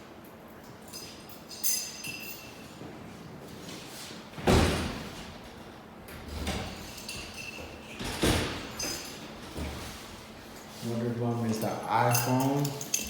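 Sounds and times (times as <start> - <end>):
light metallic clinks: 0.5 - 2.8, 11.4 - 13.0.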